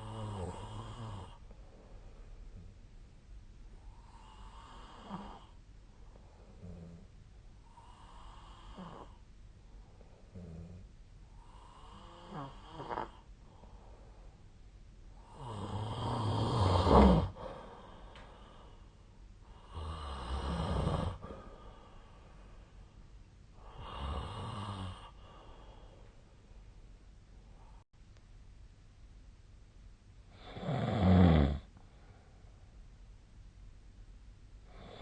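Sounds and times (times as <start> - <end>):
person snoring: 0.0 - 1.4, 3.9 - 5.6, 7.7 - 9.2, 11.4 - 13.3, 15.2 - 18.6, 19.5 - 22.1, 23.6 - 25.9, 30.3 - 31.7
faint breath sound: 1.2 - 2.9, 13.2 - 16.2, 16.8 - 26.8, 27.4 - 27.9, 31.7 - 32.9.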